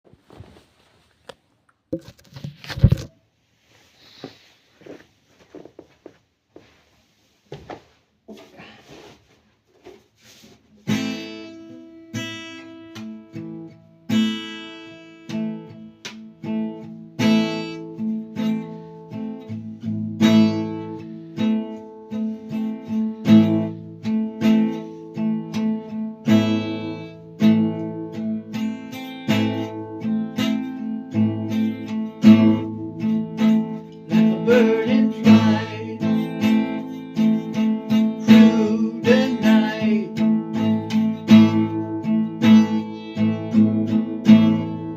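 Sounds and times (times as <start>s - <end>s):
acoustic guitar playing: 10.8s - 44.9s.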